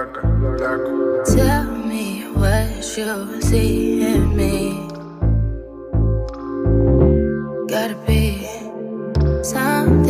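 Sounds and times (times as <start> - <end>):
synth chord pad: 0.0 - 10.0
bass hits: 3.4 - 7.4.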